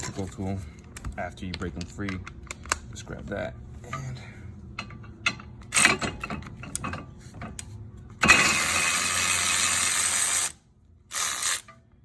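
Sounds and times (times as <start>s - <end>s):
cordless electric ratchet running: 8.6s - 11.7s.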